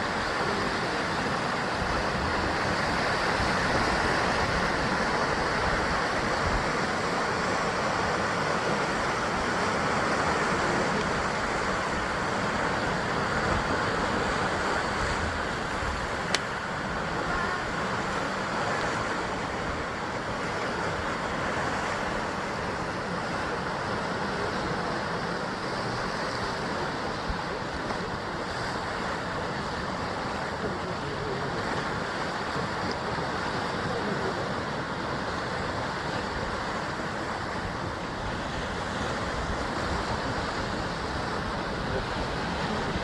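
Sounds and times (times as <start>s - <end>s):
sea waves breaking on rocks: 0.0s - 43.0s.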